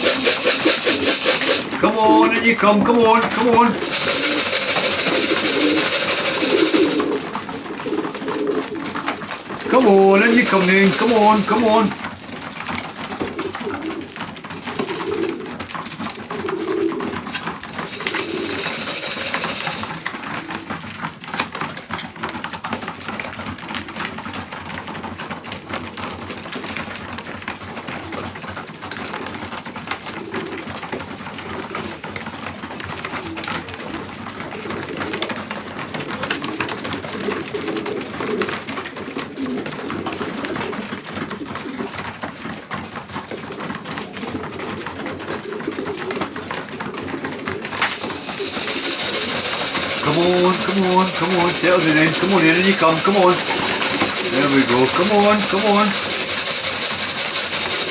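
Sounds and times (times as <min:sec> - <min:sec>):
pigeons cooing: 0:00.0 - 0:12.0, 0:12.7 - 0:20.9, 0:36.2 - 0:41.9, 0:44.2 - 0:54.4, 0:55.9 - 0:57.9.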